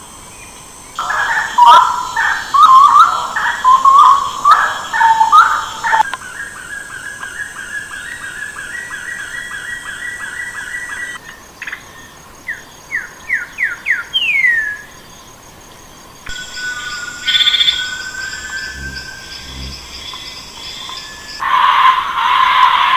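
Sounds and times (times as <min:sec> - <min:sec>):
warbling bird calls: 0:01.0 - 0:11.2, 0:16.3 - 0:22.9.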